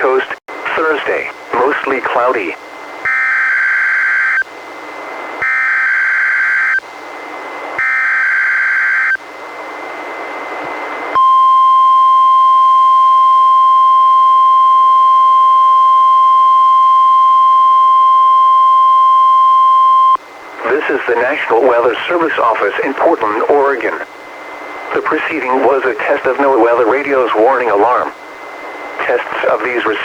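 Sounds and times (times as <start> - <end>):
radio hiss: 0.0 - 2.6, 20.5 - 30.0
steady warning alarm tone: 3.0 - 4.5, 5.4 - 6.9, 7.7 - 9.2, 11.1 - 23.6.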